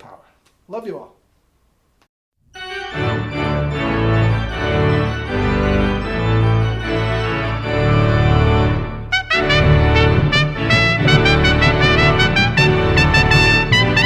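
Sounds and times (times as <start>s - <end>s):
organ chords over bass line: 2.6s - 14.0s.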